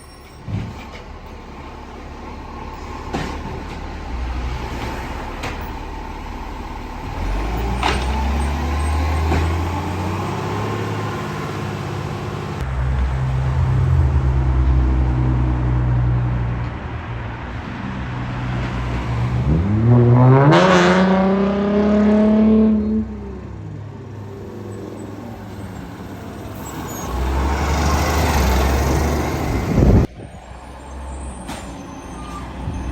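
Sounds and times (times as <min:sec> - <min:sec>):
diesel engine revving: 0:01.1 - 0:16.6, 0:18.0 - 0:32.9.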